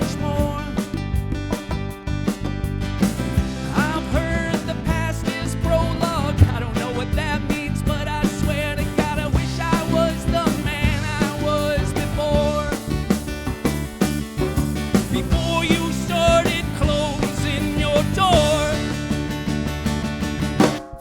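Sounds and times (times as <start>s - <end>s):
live band playing: 0.0s - 21.0s.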